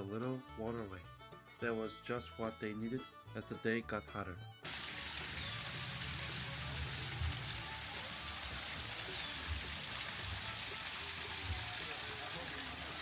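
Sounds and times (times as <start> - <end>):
water running and splashing: 4.7 - 13.0.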